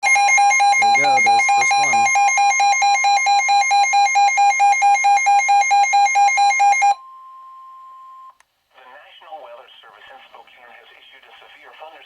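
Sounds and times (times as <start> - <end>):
radio alarm beeping: 0.0 - 7.0
steady warning tone: 0.0 - 8.3.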